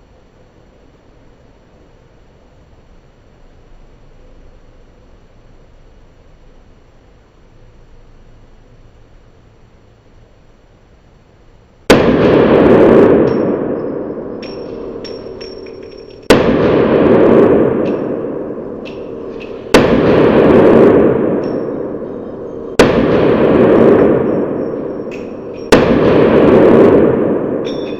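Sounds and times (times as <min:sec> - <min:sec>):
pistol shots: 0:11.9 - 0:27.9.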